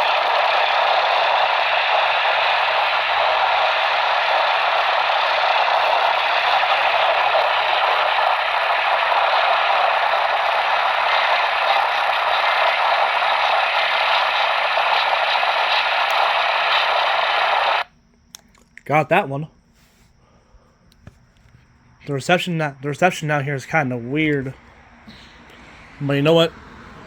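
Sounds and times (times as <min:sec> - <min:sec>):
radio static hiss: 0:00.0 - 0:17.9.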